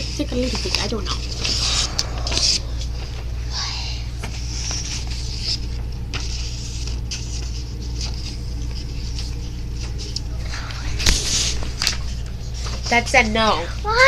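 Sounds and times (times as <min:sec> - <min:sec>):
steady low hum: 0:00.0 - 0:14.0
paper rustling and creasing: 0:04.2 - 0:13.5.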